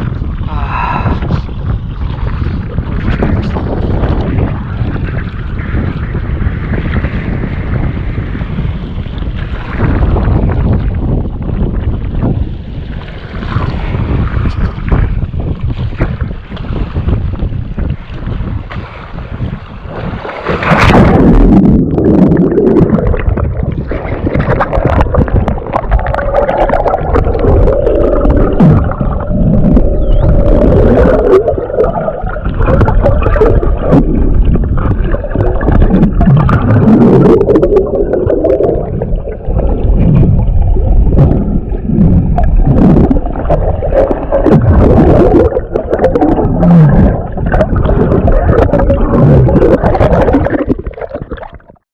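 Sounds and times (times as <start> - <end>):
wind buffeting microphone: 0.0 - 51.8
water rushing and splashing: 12.8 - 51.8.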